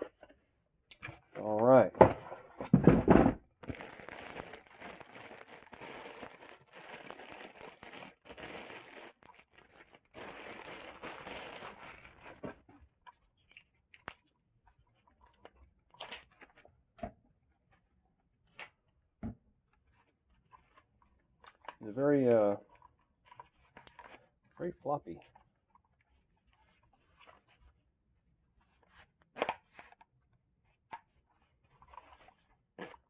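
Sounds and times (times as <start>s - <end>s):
packaging crinkling: 3.6s - 12.4s.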